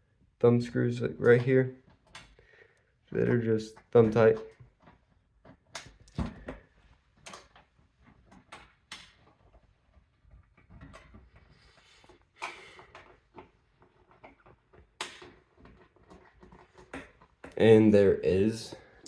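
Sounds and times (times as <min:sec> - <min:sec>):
clicks and taps on computer case: 0:08.3 - 0:09.4.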